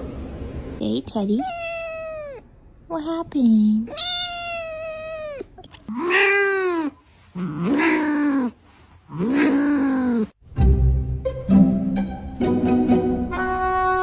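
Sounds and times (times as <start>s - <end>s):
cat meowing: 1.2s - 2.5s, 3.8s - 6.9s.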